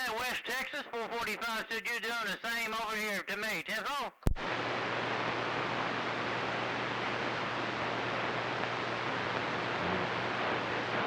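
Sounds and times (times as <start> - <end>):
radio static hiss: 0.0 - 3.3, 4.3 - 11.0
faint low hum: 4.4 - 11.0.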